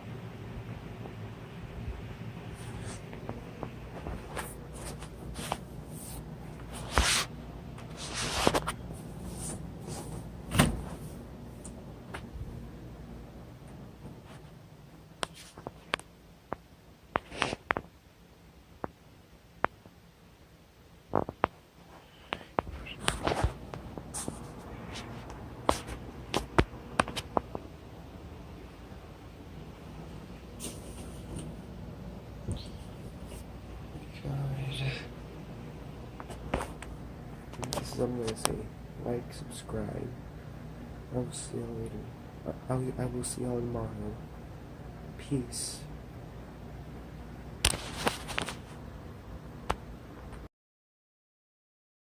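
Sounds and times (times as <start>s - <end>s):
scraping rustle: 2.5s - 11.2s, 47.7s - 48.8s
loud thud: 10.5s - 11.0s.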